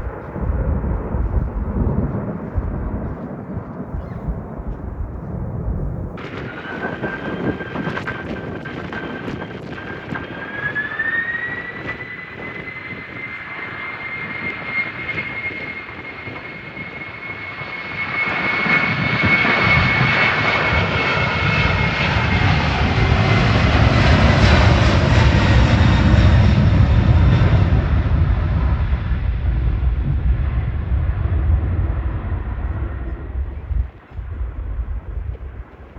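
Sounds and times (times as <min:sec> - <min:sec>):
deep engine rumble: 0:00.0 - 0:13.7, 0:20.8 - 0:35.9
jet engine whine: 0:00.0 - 0:35.9.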